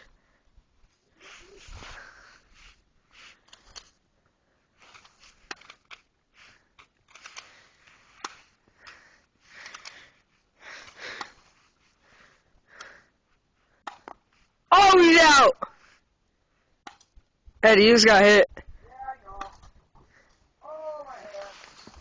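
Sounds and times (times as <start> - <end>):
close rustling: 0.8 - 4.0, 21.0 - 22.0
sharp clicks: 9.6 - 10.0.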